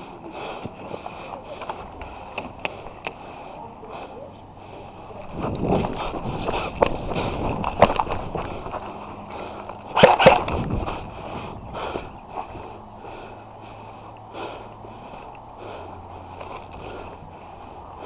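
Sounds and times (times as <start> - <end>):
breathing-like puffs: 0.0 - 18.0
gear rustling: 0.0 - 18.0.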